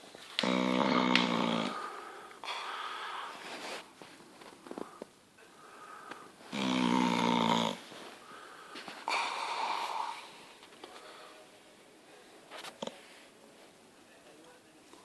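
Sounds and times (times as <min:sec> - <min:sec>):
dog snoring: 0:00.4 - 0:01.9, 0:06.5 - 0:07.9.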